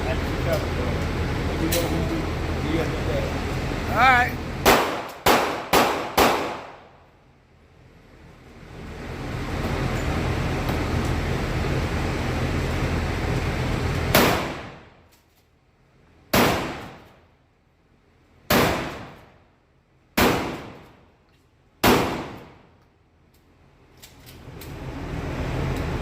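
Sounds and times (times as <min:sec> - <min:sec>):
shotgun shots: 0:04.6 - 0:06.9, 0:14.1 - 0:14.8, 0:16.3 - 0:17.1, 0:18.5 - 0:19.2, 0:20.2 - 0:20.8, 0:21.8 - 0:22.6.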